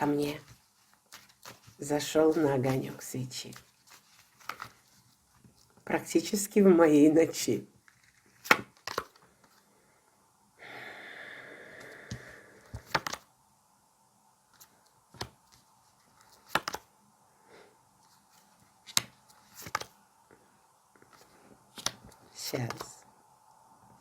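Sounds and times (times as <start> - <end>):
cards being shuffled: 0.1 - 5.9, 7.8 - 9.6, 12.6 - 13.3, 14.5 - 16.9, 18.0 - 20.0, 21.0 - 23.0.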